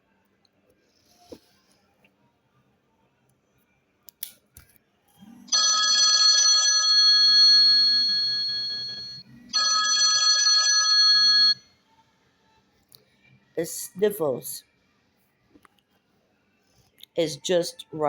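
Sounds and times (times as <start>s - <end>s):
high-pitched ringing tone: 6.4s - 11.6s.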